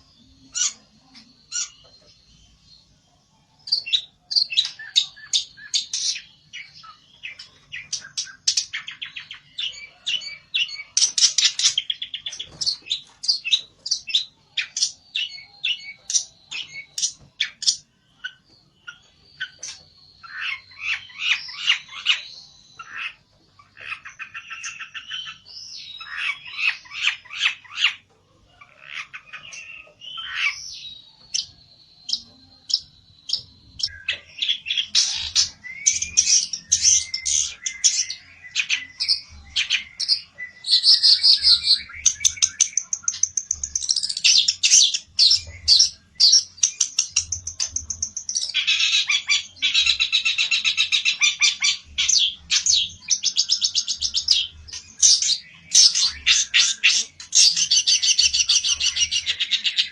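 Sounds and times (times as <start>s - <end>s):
songbird singing trills: 0.0s - 59.9s.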